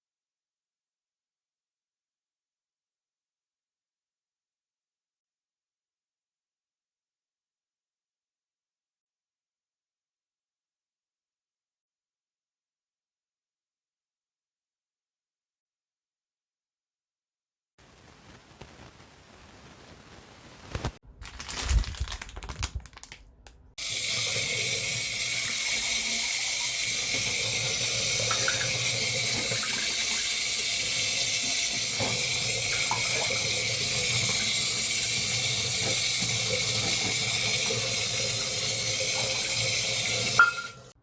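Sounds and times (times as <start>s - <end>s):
water running from a tap: 23.8s - 41.0s.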